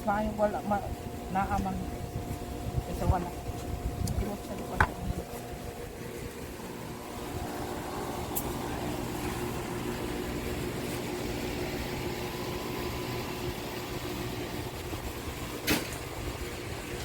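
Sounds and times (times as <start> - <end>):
steady mechanical drone: 0.0 - 17.0.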